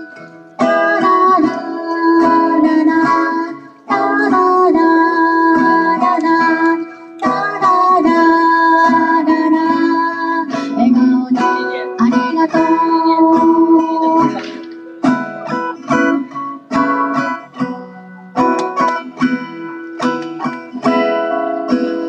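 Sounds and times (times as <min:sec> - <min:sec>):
plucked string instrument music: 0:00.0 - 0:22.0.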